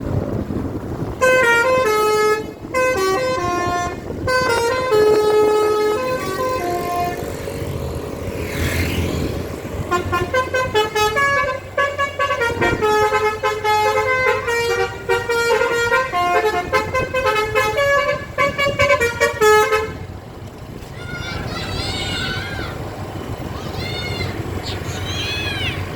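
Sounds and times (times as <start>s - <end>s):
multi-tone air horn tooting: 1.2s - 7.7s, 9.8s - 20.1s.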